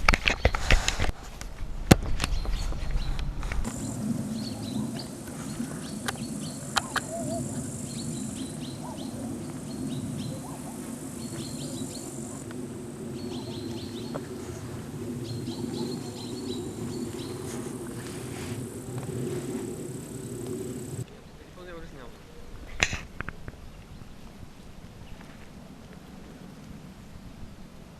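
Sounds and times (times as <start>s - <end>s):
low rumble: 1.6s - 21.1s
insects chirping: 2.2s - 22.2s
steady high hiss: 2.2s - 23.7s.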